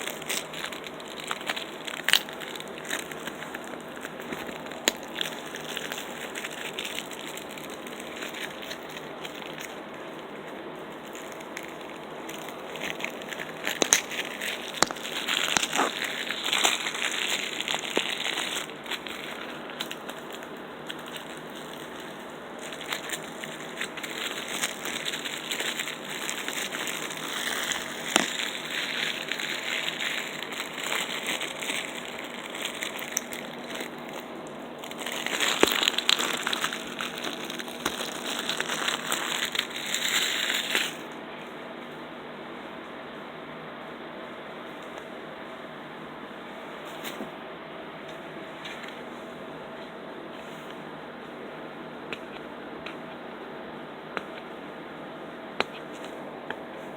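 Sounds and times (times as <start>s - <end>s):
plastic packaging crinkling: 0.0s - 41.2s.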